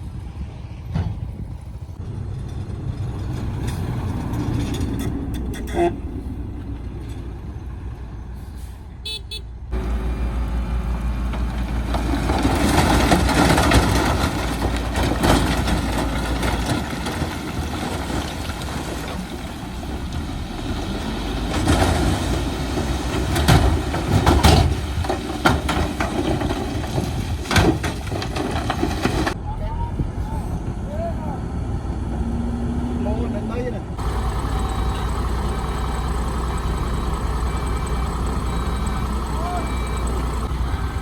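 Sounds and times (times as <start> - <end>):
heavy machinery rumbling: 0.0 - 9.1, 9.7 - 41.0
metal clanking: 11.3 - 29.4.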